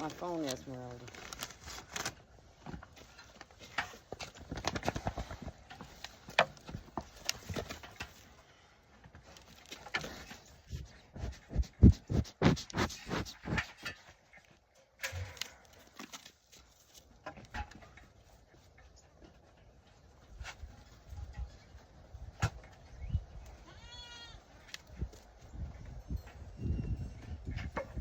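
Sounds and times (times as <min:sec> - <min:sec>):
rustling: 0:00.0 - 0:14.5
goat hooves knocking and scuffing: 0:02.5 - 0:28.0.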